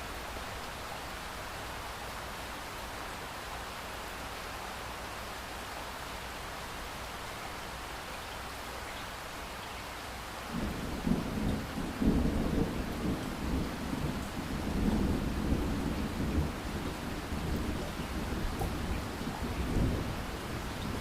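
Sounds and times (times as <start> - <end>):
pouring rain hissing: 0.0 - 21.0
rolling thunder rumble: 10.6 - 21.0.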